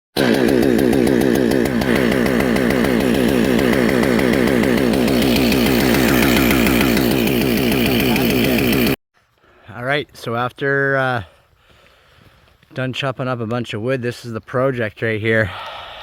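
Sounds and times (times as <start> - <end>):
chainsaw running at high revs: 0.2 - 9.0.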